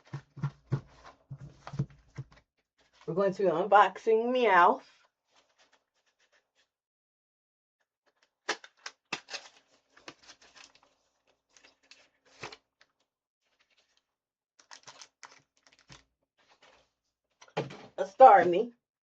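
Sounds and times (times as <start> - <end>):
plastic packaging crinkling: 8.5 - 12.6, 14.6 - 16.8.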